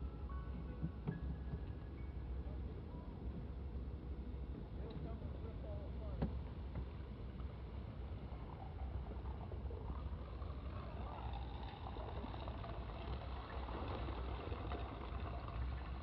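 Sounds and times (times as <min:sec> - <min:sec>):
boat engine rumbling: 0:04.6 - 0:16.0.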